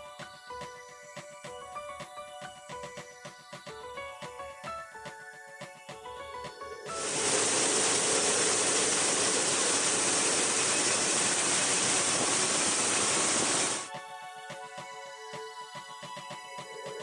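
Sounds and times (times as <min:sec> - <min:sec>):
combine harvester running: 0:07.0 - 0:13.9.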